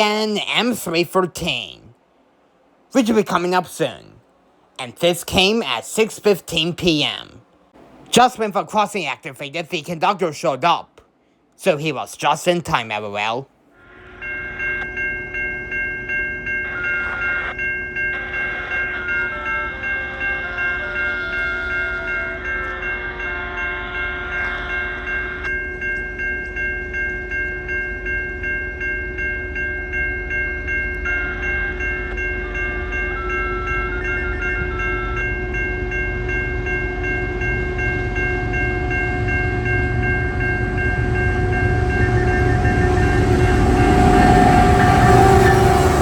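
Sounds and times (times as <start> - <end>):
level crossing bell ringing: 0.0 - 1.8, 14.2 - 46.0
freight train rumble: 0.0 - 10.8, 11.6 - 46.0.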